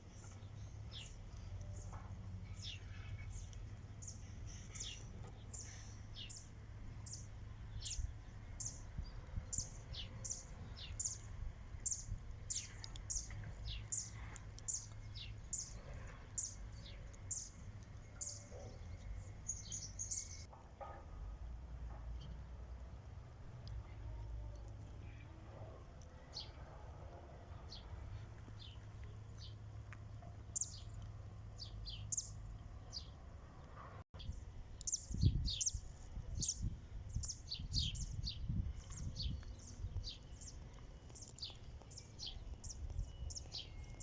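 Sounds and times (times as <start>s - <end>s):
bird chirping: 0.0s - 20.5s, 27.6s - 33.2s, 34.2s - 44.0s.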